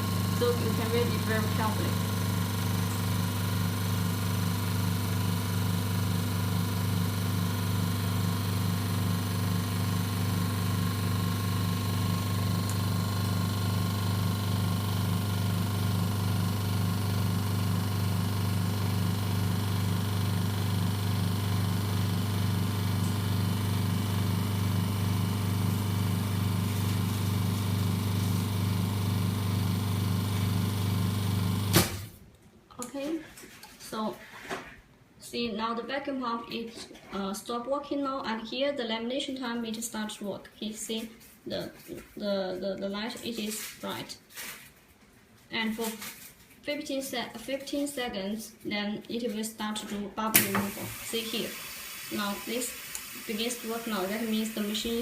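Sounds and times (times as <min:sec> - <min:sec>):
vacuum pump humming: 0:00.0 - 0:32.2, 0:50.3 - 0:55.0.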